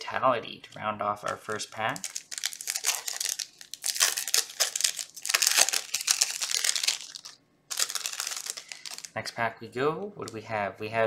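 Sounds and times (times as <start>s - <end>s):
foil wrapper crinkling and tearing: 1.2s - 9.2s.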